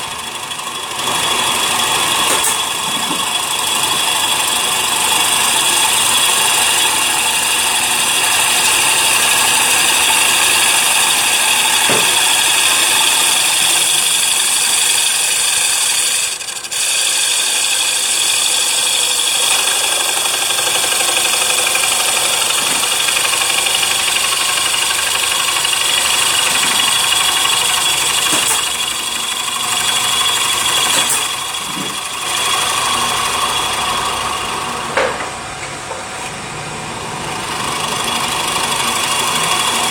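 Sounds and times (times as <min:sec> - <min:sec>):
wood lathe motor: 0:00.0 - 0:39.9
cutter hissing on wood: 0:01.2 - 0:35.1.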